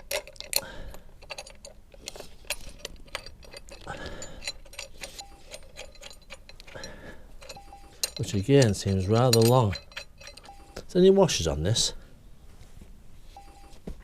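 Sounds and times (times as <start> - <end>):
small metal parts clinking: 0.0 - 11.0
metal ringing pings: 5.2 - 5.6, 7.5 - 8.3, 9.3 - 10.8.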